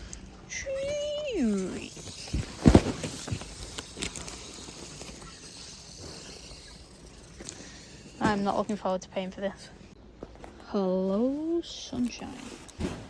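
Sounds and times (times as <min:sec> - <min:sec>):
knocks and rustles of goods: 0:00.8 - 0:06.3, 0:12.6 - 0:13.0.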